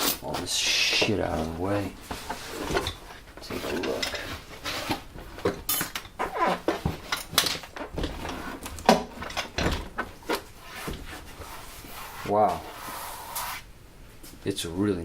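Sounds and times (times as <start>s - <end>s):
rustling: 0.0s - 14.4s
objects knocking and clattering: 2.0s - 11.1s.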